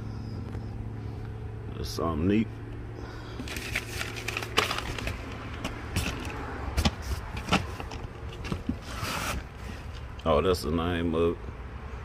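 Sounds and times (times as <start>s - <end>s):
steady low hum: 0.0s - 12.0s
cardboard boxes knocking and scraping: 3.4s - 9.9s.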